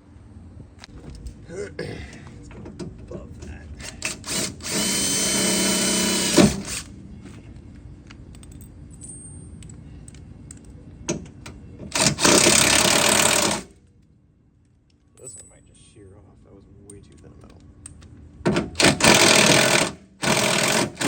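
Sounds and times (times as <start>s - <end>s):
power tool on sheet metal: 4.0s - 6.8s, 12.0s - 13.7s, 18.8s - 21.0s.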